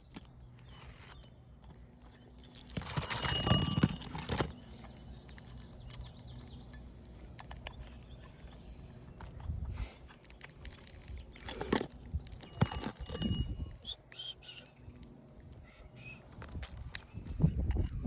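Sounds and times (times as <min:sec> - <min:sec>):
scraping and crackling on shingles: 0:00.0 - 0:06.3.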